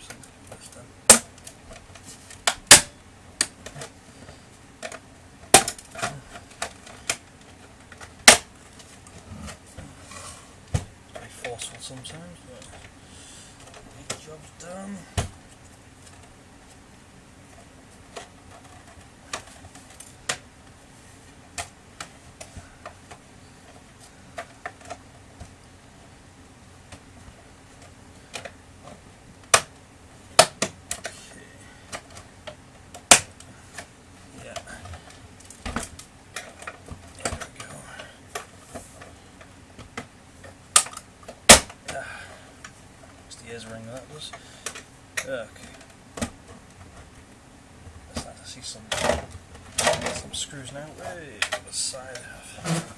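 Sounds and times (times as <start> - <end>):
loud sharp plastic snaps: 1.1 - 3.9, 7.9 - 8.5, 30.4 - 31.2, 31.9 - 33.9, 40.7 - 41.8
plastic parts clicking and tapping: 21.5 - 25.6, 27.8 - 29.8, 30.4 - 31.2, 31.8 - 42.0, 44.3 - 47.1, 48.9 - 50.3, 51.0 - 52.9.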